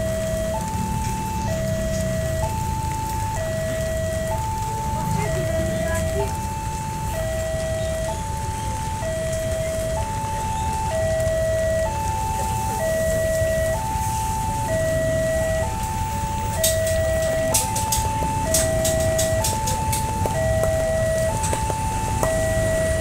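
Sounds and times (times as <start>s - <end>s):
two-tone level crossing siren: 0.0s - 23.0s.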